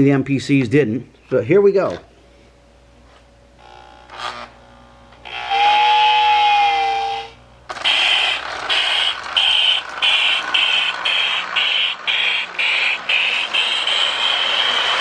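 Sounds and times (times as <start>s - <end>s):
toy steam locomotive chuffing: 5.2s - 15.0s
train whistle long note: 5.2s - 15.0s.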